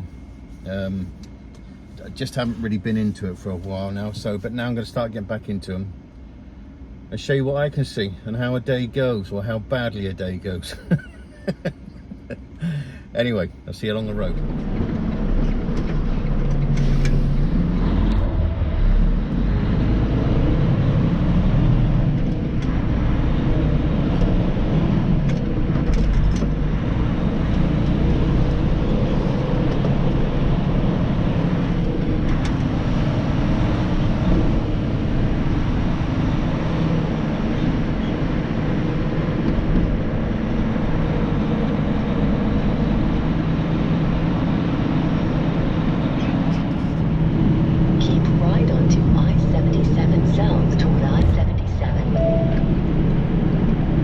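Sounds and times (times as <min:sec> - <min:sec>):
truck engine drone: 0:00.0 - 0:07.2, 0:08.2 - 0:54.0
road noise: 0:00.0 - 0:07.8, 0:08.4 - 0:54.0.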